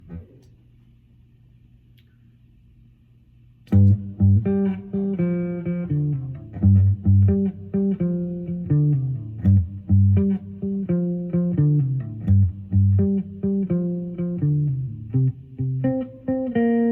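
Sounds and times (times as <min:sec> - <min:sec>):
electric guitar playing blues: 0:03.7 - 0:16.9.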